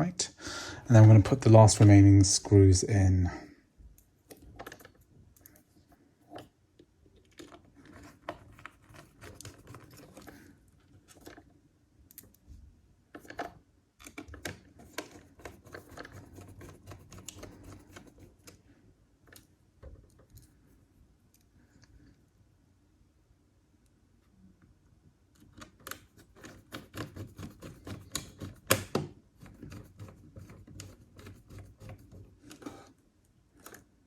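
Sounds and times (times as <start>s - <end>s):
metal scraping on metal and plastic: 7.4s - 11.4s, 14.2s - 18.6s, 25.4s - 33.0s.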